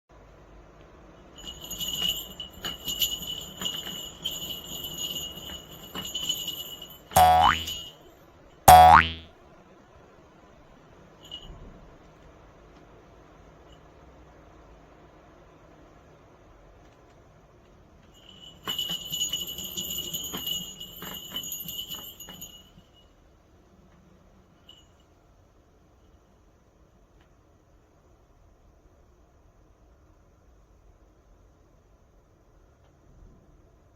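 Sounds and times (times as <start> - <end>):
small jingle bell ringing: 1.4 - 8.0, 11.2 - 11.7, 18.1 - 23.2, 24.6 - 25.2.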